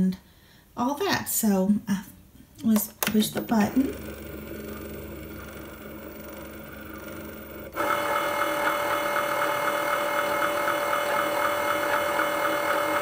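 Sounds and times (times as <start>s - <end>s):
cutting machine motor whirring: 3.1s - 13.0s.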